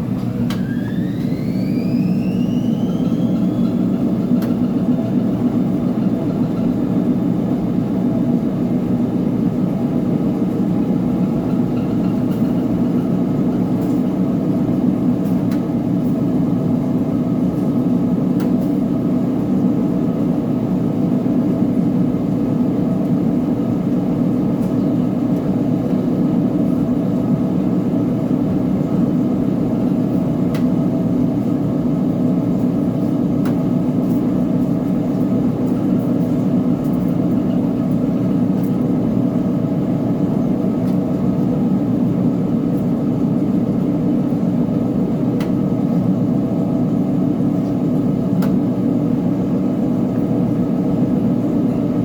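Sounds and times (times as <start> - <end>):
washing machine humming: 0.0 - 52.0.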